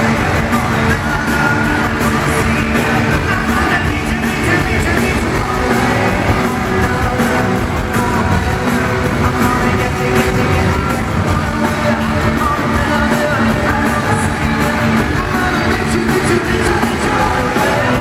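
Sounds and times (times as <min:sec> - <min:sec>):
band singing pop-rock live: 0:00.0 - 0:18.0.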